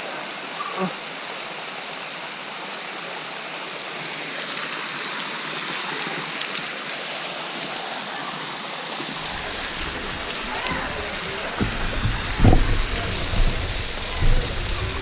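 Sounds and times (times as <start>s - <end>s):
waterfall rushing: 1.0s - 15.0s.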